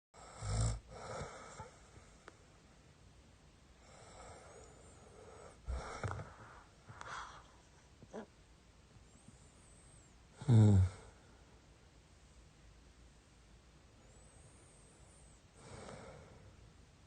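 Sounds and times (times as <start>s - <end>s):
snort: 0.2s - 1.8s, 10.4s - 11.2s
person snoring: 10.4s - 11.2s.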